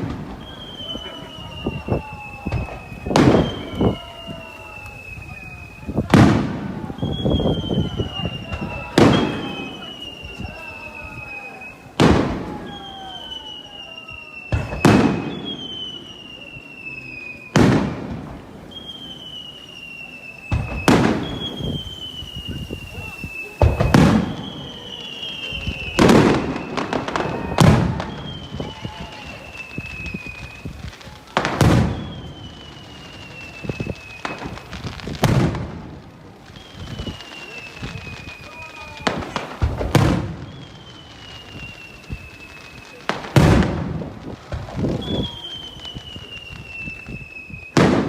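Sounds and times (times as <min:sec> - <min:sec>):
fireworks booming: 0:00.0 - 0:48.0
small firework pops: 0:00.0 - 0:48.0
falling high whistle: 0:00.3 - 0:18.0, 0:18.6 - 0:30.8, 0:31.5 - 0:34.9, 0:36.4 - 0:43.4, 0:44.8 - 0:48.0.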